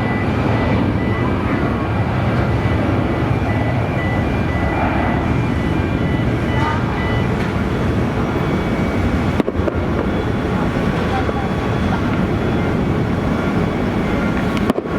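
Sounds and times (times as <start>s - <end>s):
faint high tones: 0.0s - 14.7s
jet engines rumbling: 0.0s - 14.9s.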